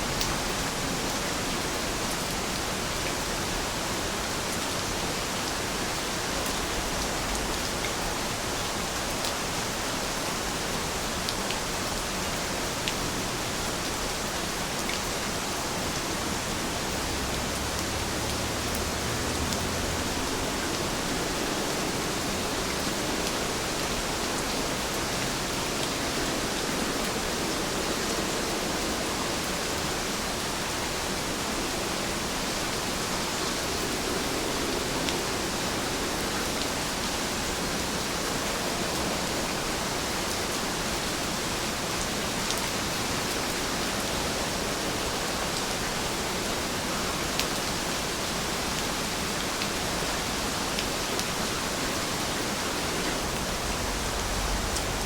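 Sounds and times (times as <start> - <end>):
rain hiss: 0.0 - 55.0
faint raindrop ticks: 0.1 - 0.4, 17.3 - 20.9.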